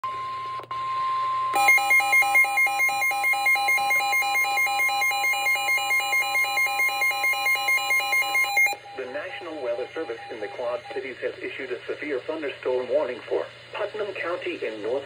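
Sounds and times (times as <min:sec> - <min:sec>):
pulsing alarm tone: 0:01.6 - 0:11.0.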